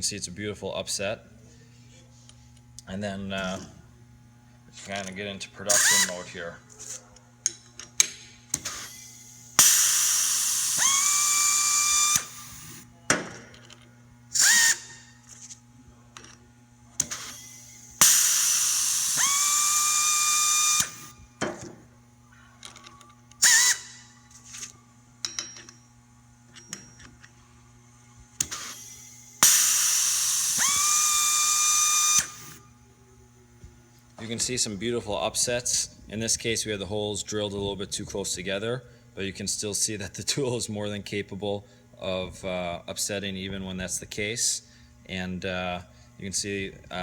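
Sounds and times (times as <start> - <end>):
motor whine: 5.6 - 6.5, 8.5 - 15.9, 16.8 - 25.2, 26.4 - 36.4
pneumatic tool air hiss: 5.7 - 6.2, 8.5 - 12.8, 14.3 - 15.5, 17.0 - 21.2, 23.4 - 24.6, 28.4 - 32.6
short sharp air bursts: 8.6 - 12.8, 17.1 - 21.2, 28.4 - 32.6.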